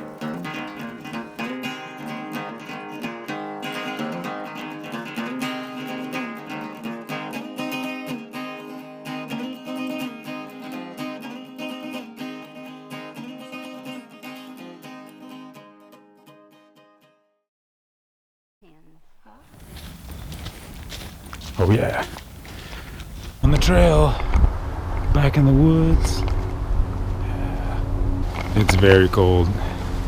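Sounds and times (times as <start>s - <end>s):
acoustic guitar strummed and plucked: 0.0s - 17.3s.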